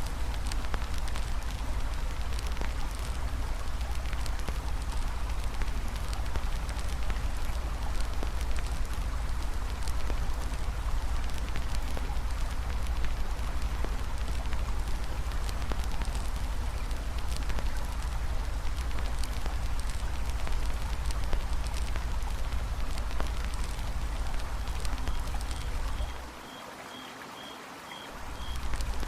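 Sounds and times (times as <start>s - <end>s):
campfire crackling and popping: 0.0s - 26.4s, 28.2s - 29.0s
river water flowing: 0.0s - 29.0s
faint high chirp: 25.1s - 28.6s.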